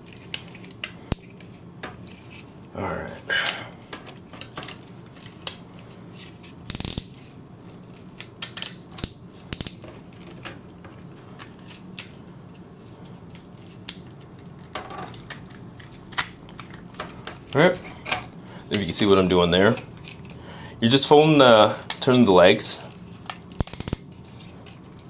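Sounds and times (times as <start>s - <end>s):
plastic toy parts clicking: 6.7s - 7.1s, 8.4s - 9.8s, 23.5s - 24.1s.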